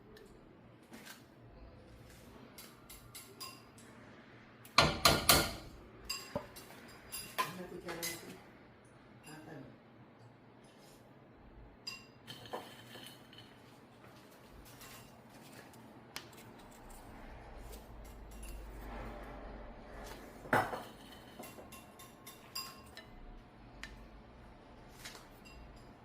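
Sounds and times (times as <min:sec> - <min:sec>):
spoon and dishes clinking: 0:02.5 - 0:03.9, 0:05.5 - 0:08.4, 0:11.8 - 0:13.8, 0:14.6 - 0:15.6, 0:20.4 - 0:24.0, 0:25.0 - 0:26.0.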